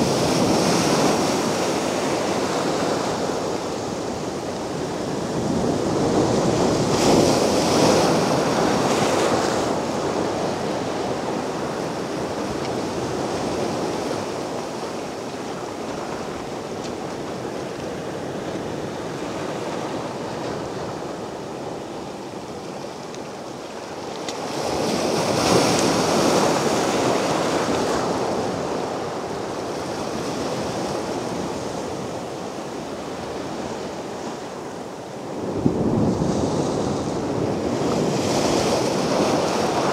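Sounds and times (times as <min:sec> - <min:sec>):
sea waves crashing on beach: 0:00.0 - 0:39.9
soft surf wash: 0:00.0 - 0:39.9.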